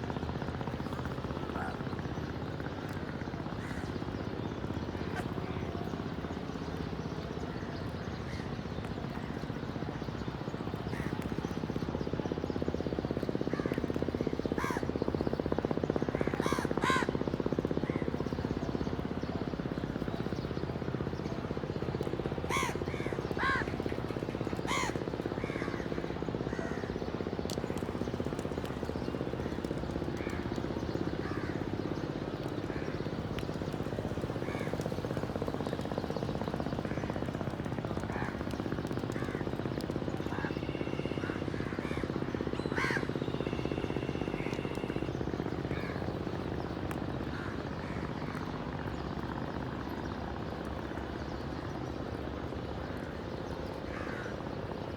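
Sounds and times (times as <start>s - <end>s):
crows cawing: 1.5s - 1.8s, 3.6s - 3.9s, 10.9s - 11.2s, 13.5s - 13.9s, 14.5s - 15.0s, 16.2s - 17.2s, 22.4s - 27.0s, 29.4s - 33.1s, 33.9s - 35.0s, 38.0s - 38.5s, 39.1s - 39.6s, 40.2s - 45.0s, 45.7s - 46.0s, 47.3s - 48.4s, 53.9s - 54.4s.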